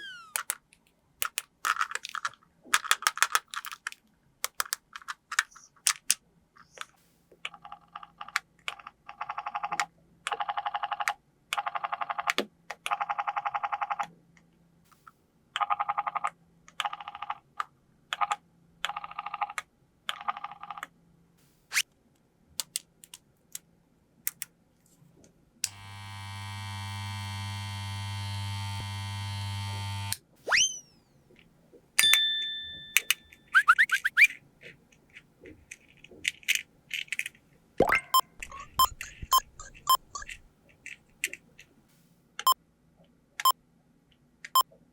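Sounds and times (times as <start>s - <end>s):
toy electronic sound effects: 0.0s - 0.5s, 30.5s - 31.0s, 32.9s - 34.4s, 37.9s - 40.5s
plastic pieces clicking: 0.3s - 6.2s, 35.1s - 41.4s
electronic buzzing bursts: 25.7s - 30.1s
electronic beep: 32.7s - 34.3s, 37.9s - 40.4s
rising chirps: 33.5s - 34.3s.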